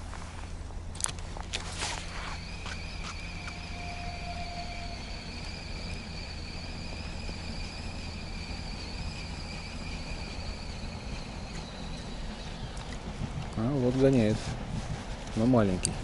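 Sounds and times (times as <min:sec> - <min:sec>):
low steady rumble: 0:00.0 - 0:16.0
insects buzzing: 0:02.0 - 0:12.9.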